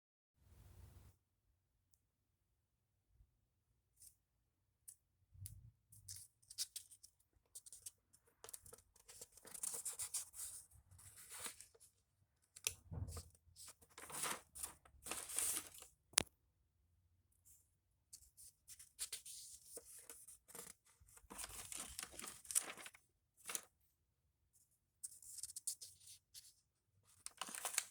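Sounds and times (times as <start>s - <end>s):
paper rustling: 8.4s - 11.9s, 12.6s - 15.9s, 18.7s - 23.7s, 27.1s - 27.9s.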